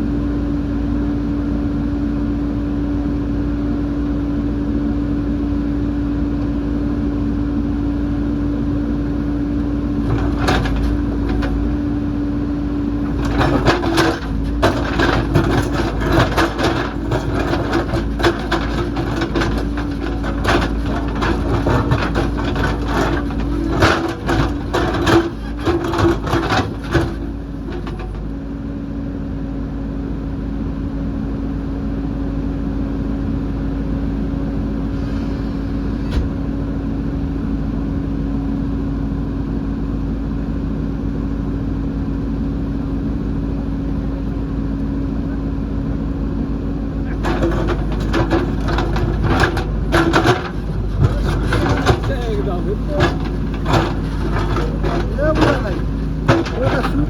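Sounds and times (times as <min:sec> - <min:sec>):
diesel engine running: 0:09.0 - 0:29.0, 0:45.2 - 0:57.0
bucket knocking on rock: 0:13.0 - 0:28.2, 0:47.1 - 0:57.0.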